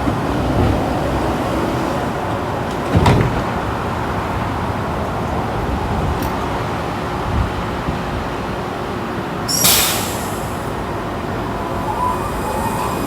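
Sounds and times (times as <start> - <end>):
train low rumble: 0.0 - 13.0.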